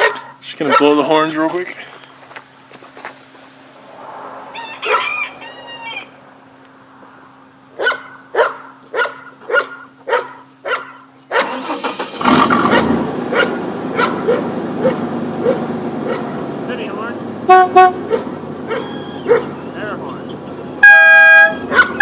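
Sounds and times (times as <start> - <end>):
rooster crowing: 4.3 - 6.2.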